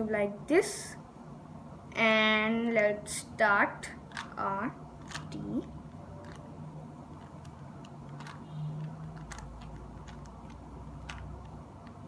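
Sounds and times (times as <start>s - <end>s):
low steady hum: 0.0s - 12.0s
plastic cube clicks: 7.2s - 12.0s.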